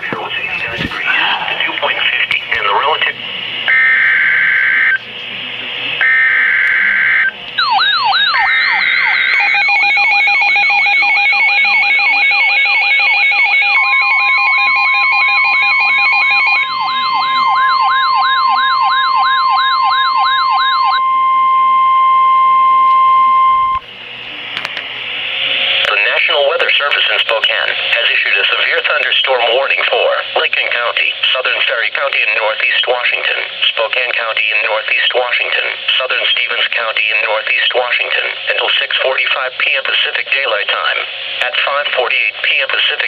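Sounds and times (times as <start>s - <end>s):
rapid beeping: 0.0s - 21.2s
buzzy digital header bursts: 1.0s - 5.0s
wailing siren: 3.7s - 5.0s, 6.0s - 23.8s.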